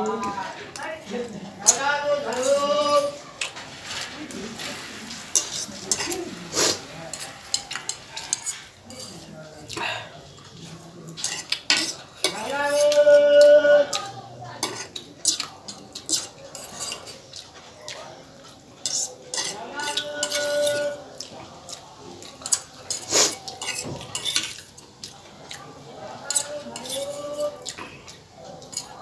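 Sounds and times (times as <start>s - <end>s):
utensil scraping on a plate: 1.6s - 9.4s, 11.2s - 17.4s, 18.8s - 24.8s, 26.2s - 29.0s.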